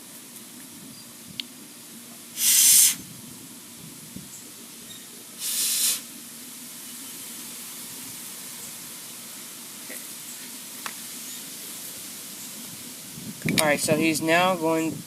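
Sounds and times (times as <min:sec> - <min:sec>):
aerosol spray hiss: 0:02.4 - 0:03.0, 0:05.4 - 0:06.1.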